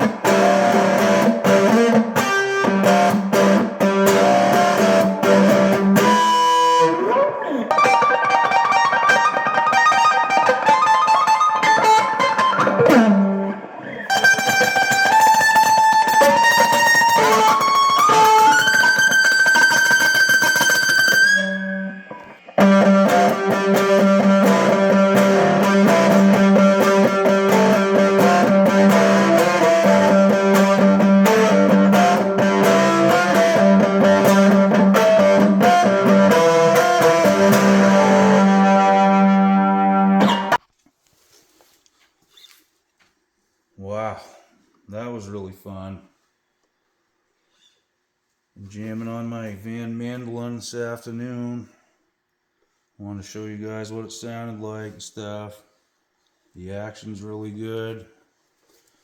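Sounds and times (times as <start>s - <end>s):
electric mandolin picking: 0.0s - 40.6s.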